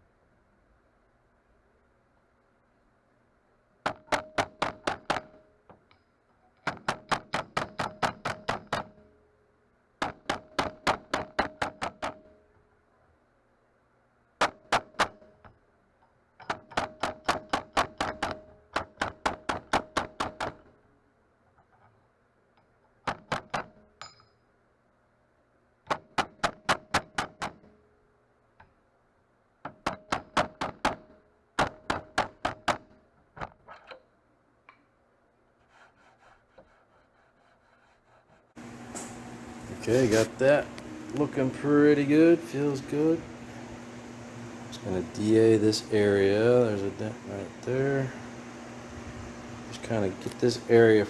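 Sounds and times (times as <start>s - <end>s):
hammer tapping on metal panel: 3.9s - 5.4s, 10.0s - 12.3s, 16.5s - 20.7s.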